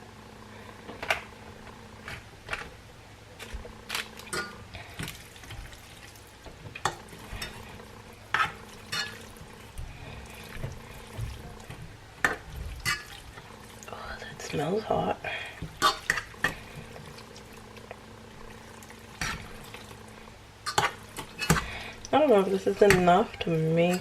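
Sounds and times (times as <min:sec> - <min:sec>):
low steady hum: 0:00.0 - 0:24.0
wet stirring sounds: 0:03.3 - 0:24.0
utensil clinking against pot: 0:08.3 - 0:09.3.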